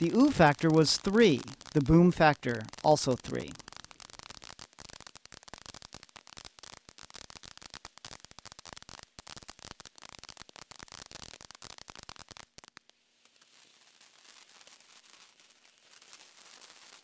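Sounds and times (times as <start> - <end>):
faint hiss: 0.0 - 7.4, 12.8 - 17.0
firework crackling: 0.0 - 17.0.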